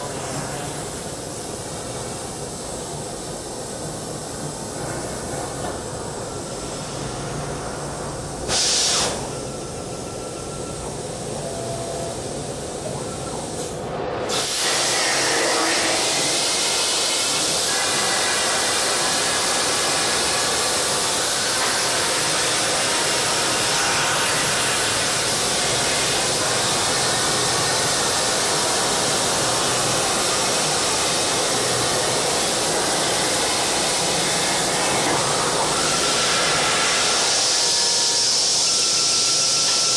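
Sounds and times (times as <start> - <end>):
plasma cutter hiss: 0.0 - 39.9.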